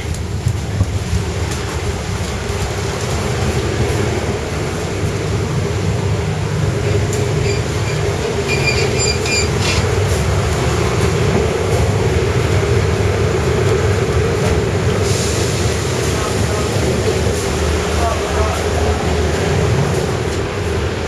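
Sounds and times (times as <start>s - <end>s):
train rumbling on track: 0.0s - 21.0s
high-pitched wheel squeals: 7.4s - 9.9s.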